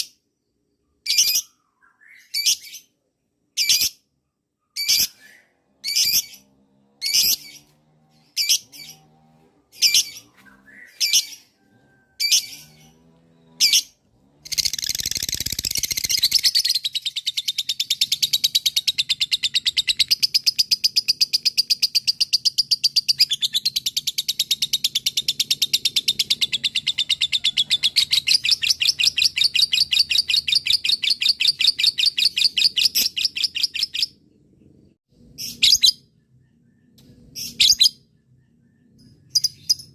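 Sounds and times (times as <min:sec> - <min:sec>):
lovebird shrill chirps: 0:04.7 - 0:06.4, 0:14.5 - 0:20.9
lovebird rapid chattering trill: 0:14.5 - 0:34.0.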